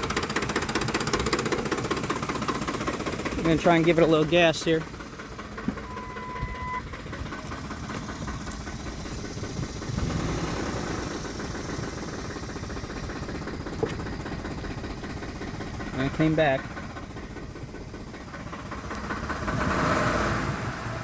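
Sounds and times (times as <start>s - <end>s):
truck engine revving: 0.0s - 21.0s
short electronic beep: 5.8s - 6.9s.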